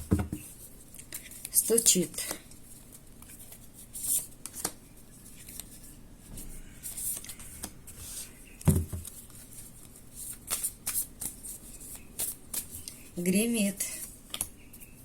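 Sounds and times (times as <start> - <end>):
cards sliding and rustling: 9.0 - 13.0.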